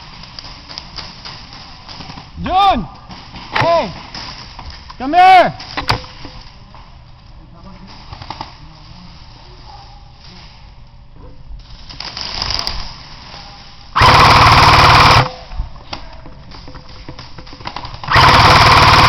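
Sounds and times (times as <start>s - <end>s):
airsoft gun full-auto burst: 12.0s - 12.7s, 14.0s - 15.4s, 17.7s - 19.0s
faint rapid fire rattle: 14.0s - 15.4s, 16.4s - 19.0s.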